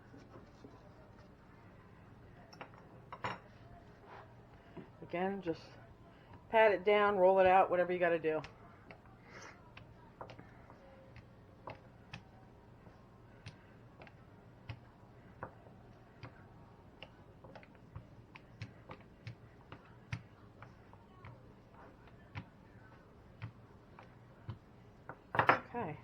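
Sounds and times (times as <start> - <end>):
low room hum: 0.0 - 26.0
hands patting dough on counter: 8.4 - 25.7.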